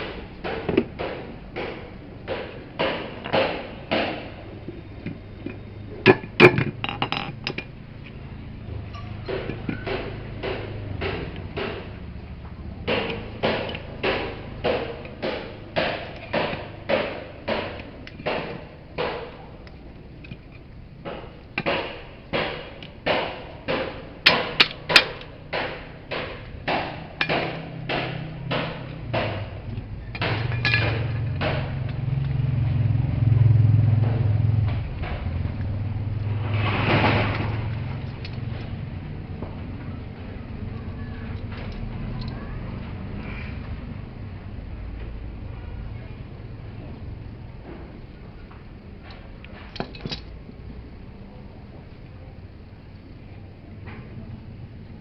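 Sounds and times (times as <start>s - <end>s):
steady knocks: 0.0s - 33.0s.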